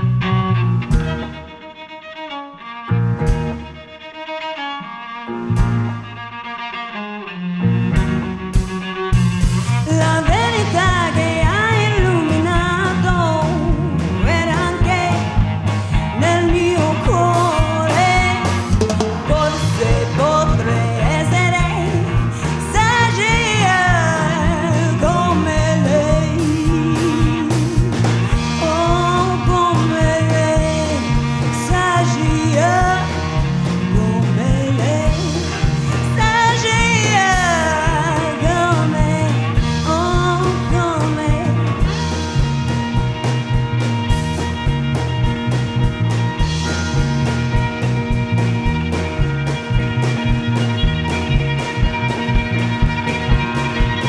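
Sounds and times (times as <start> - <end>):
steady bass line: 0.0 - 1.9, 2.7 - 4.1, 5.3 - 6.5, 7.6 - 54.0
live rock band playing: 0.0 - 4.7, 5.3 - 54.0
sliding lead melody: 0.0 - 54.0
drum beat: 8.0 - 54.0.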